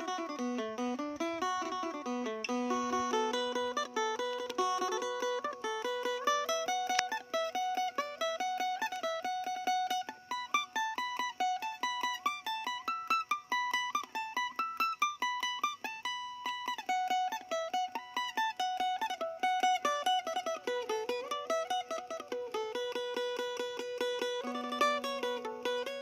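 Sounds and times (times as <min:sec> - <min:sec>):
plucked lute melody: 0:00.0 - 0:26.0.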